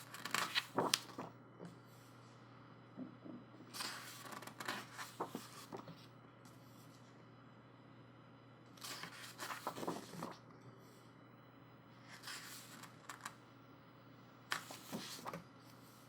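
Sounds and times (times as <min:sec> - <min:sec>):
book pages turning: 0:00.0 - 0:01.3, 0:03.8 - 0:06.1, 0:08.8 - 0:10.4, 0:12.2 - 0:13.4, 0:14.5 - 0:15.4.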